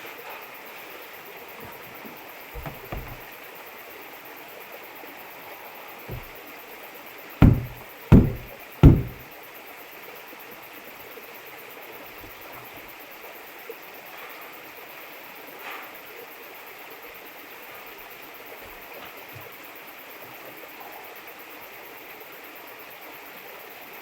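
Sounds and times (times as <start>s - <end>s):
heavy ringing thumps: 2.6s - 3.2s, 6.1s - 6.3s, 7.4s - 9.2s.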